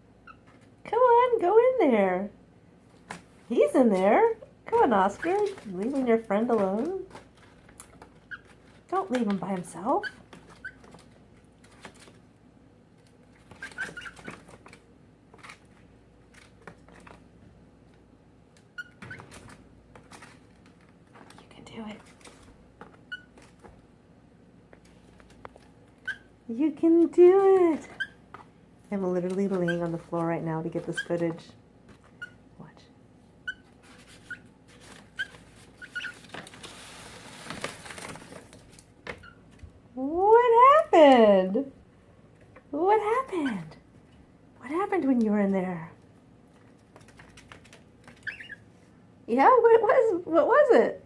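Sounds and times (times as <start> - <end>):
paper bag crinkling: 33.8 - 38.9
cockatiel chirping: 48.2 - 48.6.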